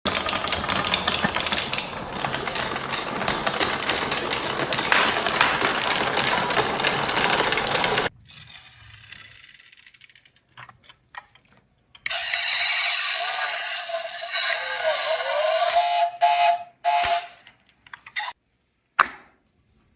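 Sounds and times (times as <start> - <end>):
marbles clattering down wooden track: 0.1 - 8.1.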